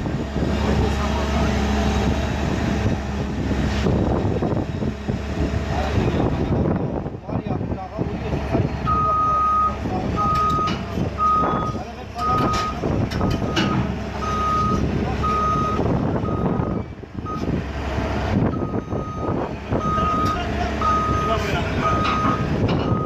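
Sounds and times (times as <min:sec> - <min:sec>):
heavy engine running: 0:00.0 - 0:23.0
reversing alarm beeping: 0:08.9 - 0:17.5, 0:18.5 - 0:23.0.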